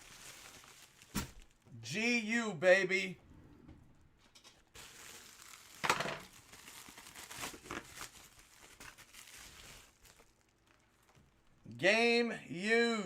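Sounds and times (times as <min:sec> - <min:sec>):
plastic packaging crinkling: 0:00.0 - 0:01.7, 0:04.6 - 0:11.6.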